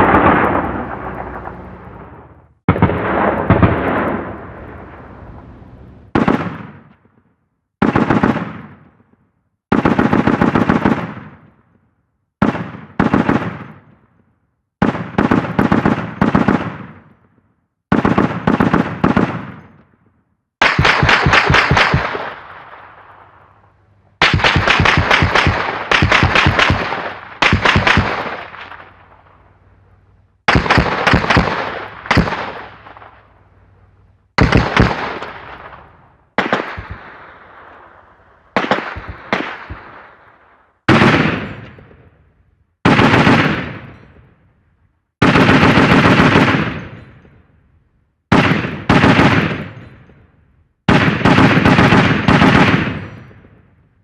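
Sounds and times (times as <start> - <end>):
automatic gunfire: 6.1 - 6.9, 9.7 - 11.5, 20.6 - 22.7, 24.2 - 29.2, 30.5 - 33.2, 34.4 - 37.4, 38.5 - 40.2, 40.9 - 41.8, 42.8 - 44.0, 45.2 - 47.1, 48.3 - 49.9, 50.9 - 53.3.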